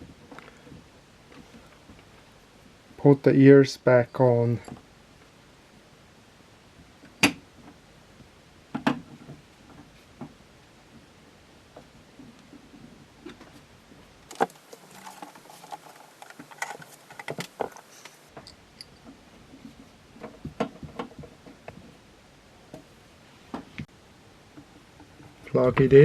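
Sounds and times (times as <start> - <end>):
metal parts clicking and knocking: 14.3 - 19.1.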